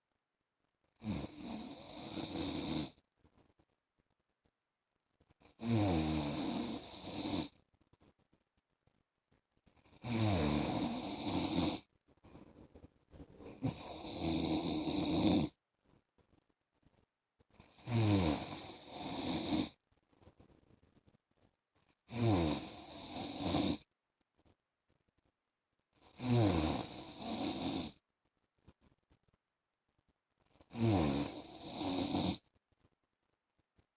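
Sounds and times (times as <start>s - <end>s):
man snoring: 1.0s - 2.9s, 5.6s - 7.5s, 10.0s - 11.8s, 13.6s - 15.5s, 17.8s - 19.7s, 22.1s - 23.8s, 26.2s - 28.0s, 30.7s - 32.4s.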